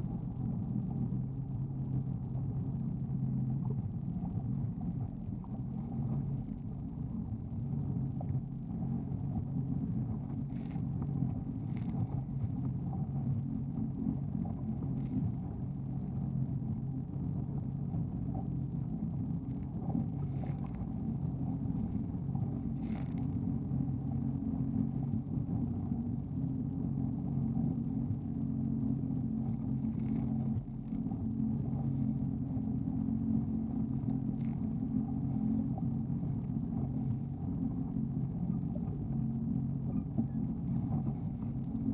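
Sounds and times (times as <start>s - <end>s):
jet ski engine running: 10.9s - 41.9s.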